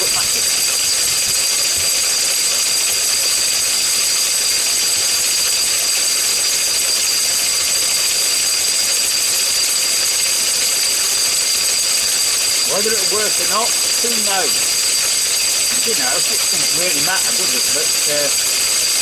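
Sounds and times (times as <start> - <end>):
stationary engine running: 0.0 - 5.0, 10.8 - 19.0.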